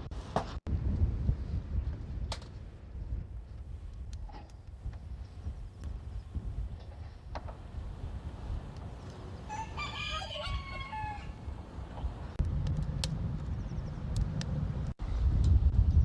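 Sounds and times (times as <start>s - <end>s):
rooster crowing: 9.5s - 11.5s
low rumble: 11.3s - 16.0s.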